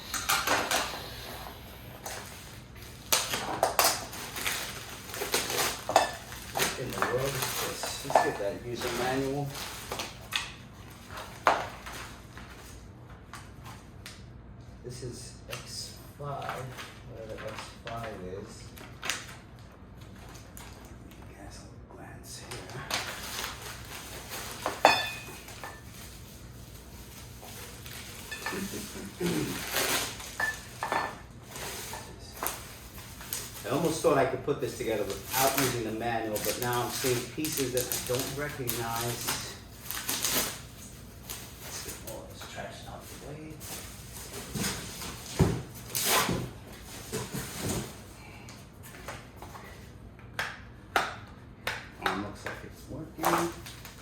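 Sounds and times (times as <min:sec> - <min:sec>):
packaging rustling: 0:02.0 - 0:12.8, 0:22.8 - 0:48.2.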